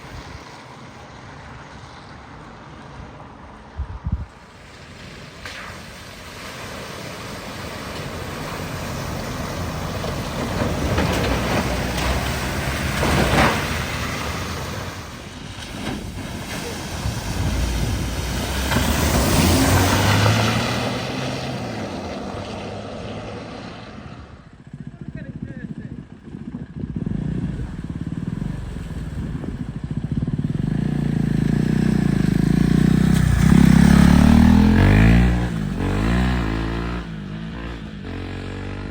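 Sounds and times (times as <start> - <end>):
water spray: 4.5 - 22.3
car engine running: 24.6 - 36.6.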